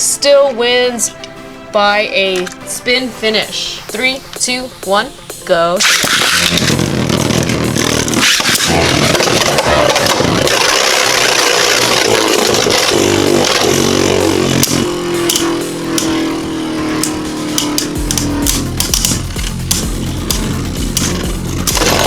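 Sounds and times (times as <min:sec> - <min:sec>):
spinning tops clicking hits: 0:05.8 - 0:22.0
spinning tops whirring: 0:05.8 - 0:22.0.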